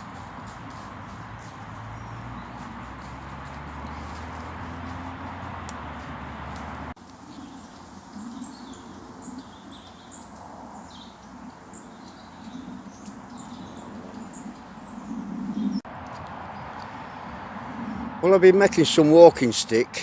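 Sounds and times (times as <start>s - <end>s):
small birds chirping: 0.0s - 15.9s.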